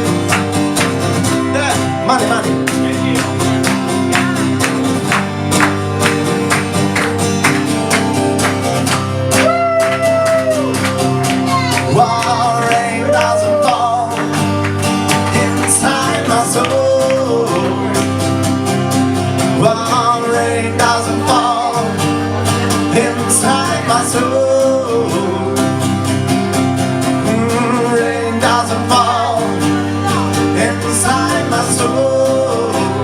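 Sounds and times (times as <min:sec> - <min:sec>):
pop band playing guitar and drums: 0:00.0 - 0:33.0.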